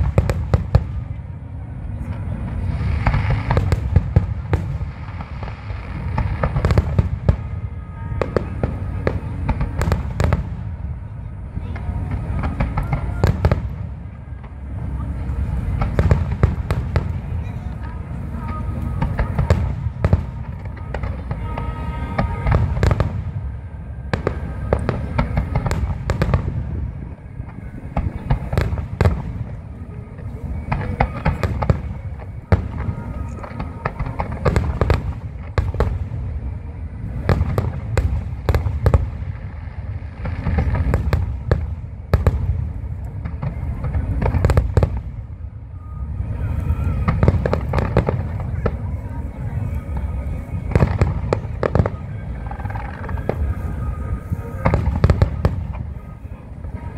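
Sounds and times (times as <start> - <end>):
fireworks cracking and booming: 0.0 - 56.9.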